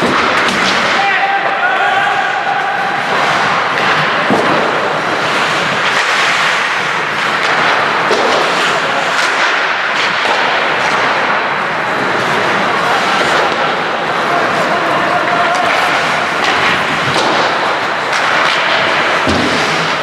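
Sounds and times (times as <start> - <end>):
ice hockey play on rink: 0.0 - 20.0
sticks and puck clacking: 0.0 - 20.0.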